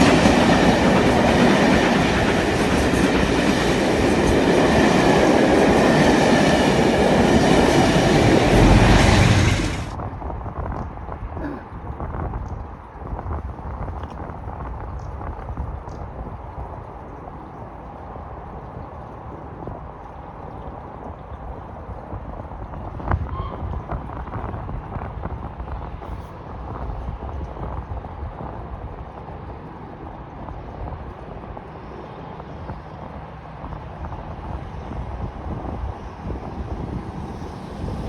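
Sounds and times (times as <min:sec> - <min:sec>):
steam locomotive exhaust rumbling: 0:00.0 - 0:10.6, 0:33.6 - 0:38.0
wind buffeting microphone: 0:00.0 - 0:38.0.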